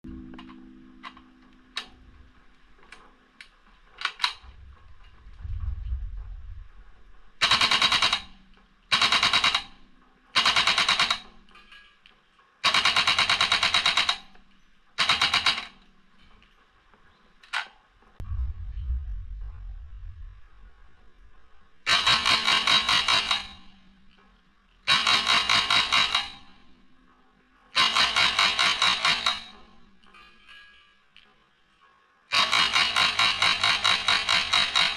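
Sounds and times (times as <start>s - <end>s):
dull rumbles of handling noise: 3.6s - 7.4s, 18.1s - 21.9s
airsoft rifle firing bursts: 7.4s - 9.8s, 10.4s - 11.2s, 12.6s - 14.3s, 15.0s - 15.8s, 21.9s - 23.7s, 24.9s - 26.5s, 27.8s - 29.5s, 32.3s - 34.9s.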